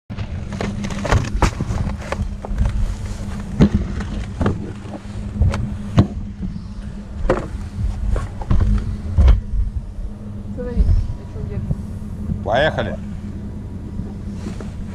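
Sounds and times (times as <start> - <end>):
irregular knocks and clatters: 0.1 - 9.9
vehicle engine humming: 0.1 - 14.9.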